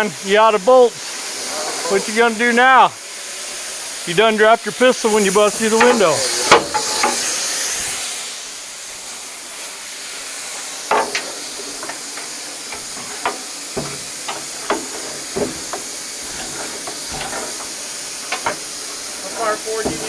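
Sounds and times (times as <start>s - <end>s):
compressed air hissing: 0.0s - 20.0s
metallic knocks and clicks: 5.8s - 7.3s, 10.9s - 20.0s.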